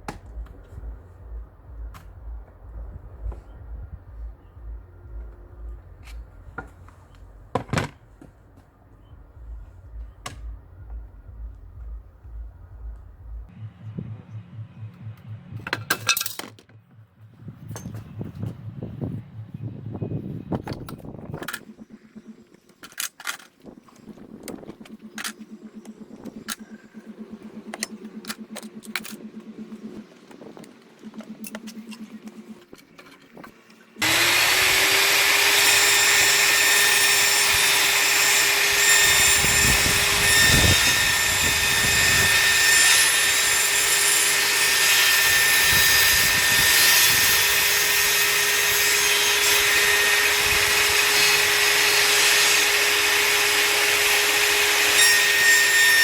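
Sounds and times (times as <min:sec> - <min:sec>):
table saw running: 0:34.0 - 0:56.0.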